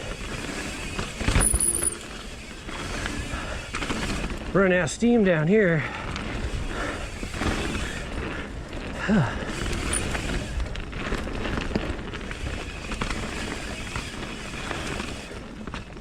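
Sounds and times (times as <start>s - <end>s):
bike tyre roar on dirt: 0.0s - 16.0s
chain and frame rattling: 1.3s - 2.1s, 9.7s - 10.2s.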